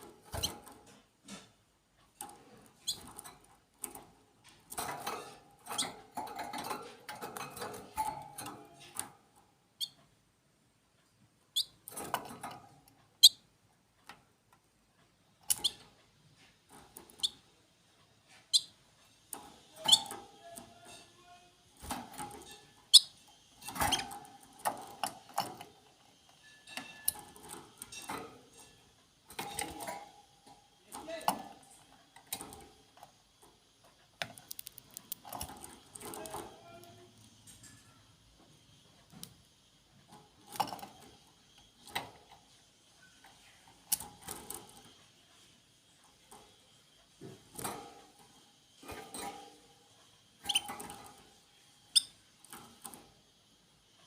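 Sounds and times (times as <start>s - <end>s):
small birds chirping: 2.3s - 3.2s, 9.7s - 10.2s, 18.4s - 30.4s.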